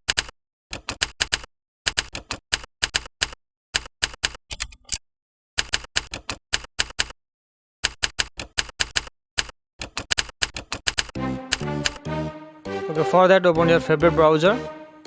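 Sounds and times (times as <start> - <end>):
typewriter key clacks: 0.0 - 4.9, 7.8 - 11.2.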